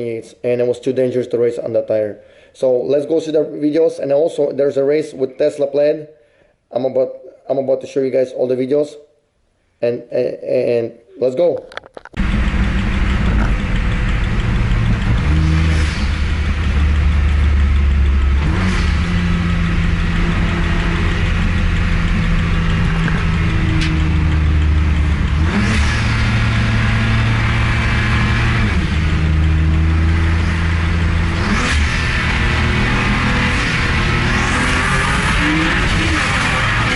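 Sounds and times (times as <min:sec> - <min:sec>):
car engine running hard: 0:12.2 - 0:36.9.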